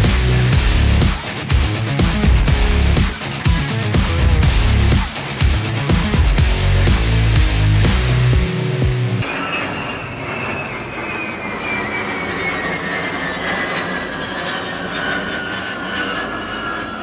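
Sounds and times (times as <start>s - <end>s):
jet bomber passing overhead: 9.2s - 17.0s.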